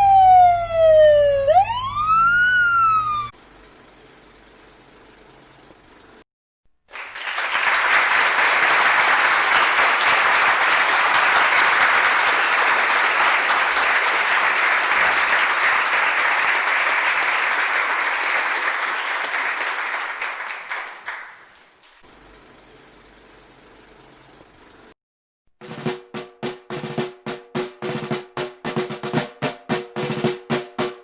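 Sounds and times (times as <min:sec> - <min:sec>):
crowd applauding: 0:06.9 - 0:24.7.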